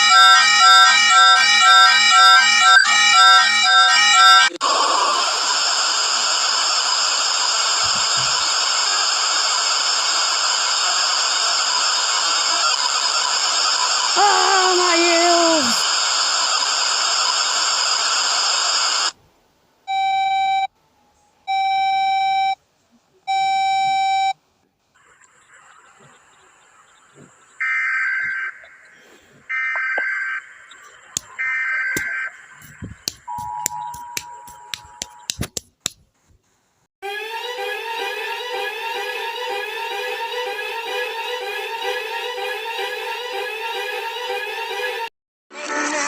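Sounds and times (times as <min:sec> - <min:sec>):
long electronic beeps: 0:00.0 - 0:04.6, 0:27.6 - 0:35.3
static hiss: 0:04.6 - 0:19.2
sharp clicks: 0:31.1 - 0:36.0.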